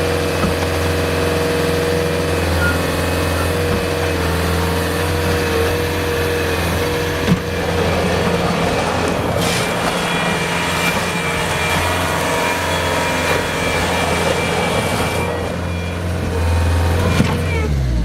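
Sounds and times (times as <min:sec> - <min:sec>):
diesel engine running: 0:00.0 - 0:18.0.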